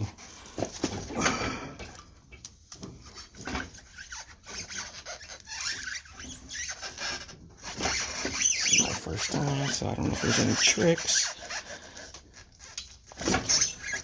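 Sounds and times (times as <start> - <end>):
wheel scraping and rubbing: 2.9 - 14.0
squeaks: 3.1 - 14.0.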